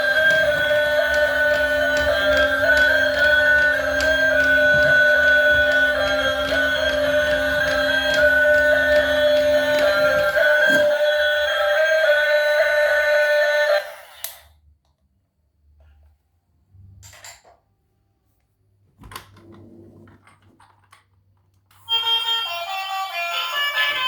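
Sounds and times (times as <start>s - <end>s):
background music: 0.0s - 14.0s.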